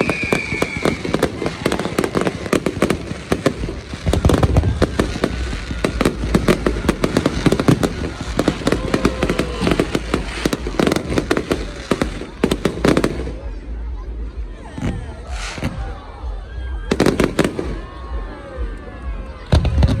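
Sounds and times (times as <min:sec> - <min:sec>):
deep firework boom: 0:00.0 - 0:13.5
fireworks crackling and popping: 0:00.0 - 0:14.0, 0:14.6 - 0:16.0, 0:16.8 - 0:20.0.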